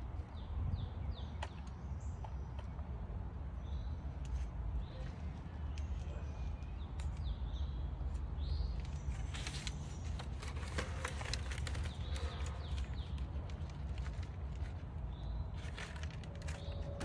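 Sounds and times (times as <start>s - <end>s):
birds chirping: 0.2s - 17.0s
clicks and rustles: 8.8s - 17.0s.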